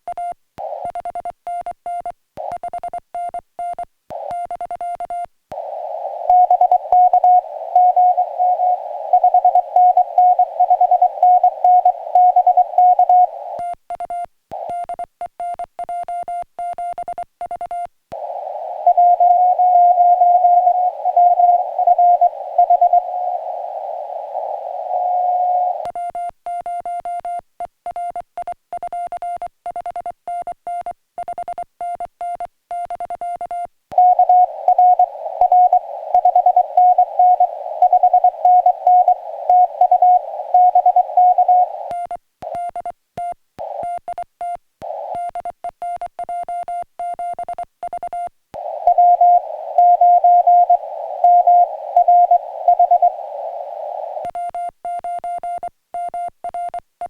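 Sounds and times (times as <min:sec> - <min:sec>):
radio band hiss: 0:00.6 - 0:00.9, 0:05.5 - 0:13.6, 0:18.2 - 0:25.9, 0:34.0 - 0:42.6, 0:43.6 - 0:43.9, 0:44.8 - 0:45.2, 0:48.6 - 0:54.3
morse code tone: 0:06.2 - 0:17.9, 0:18.8 - 0:27.4, 0:28.0 - 0:56.8.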